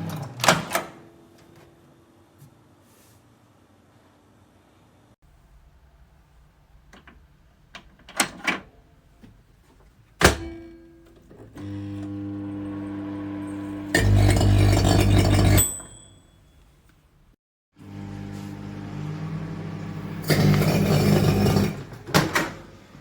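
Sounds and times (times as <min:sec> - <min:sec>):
microwave door shutting: 0:10.2 - 0:10.7
microwave running hum: 0:10.4 - 0:16.0, 0:17.8 - 0:23.0.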